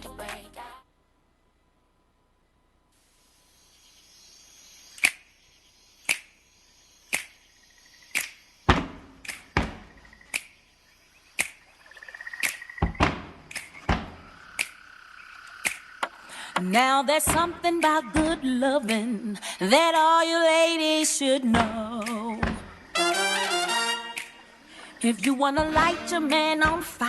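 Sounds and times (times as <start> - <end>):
faint hiss: 2.8 - 8.7
sharp electronic clicks: 4.9 - 5.4, 11.3 - 16.2
deep thumps: 8.7 - 10.1, 12.8 - 14.4, 21.6 - 22.9.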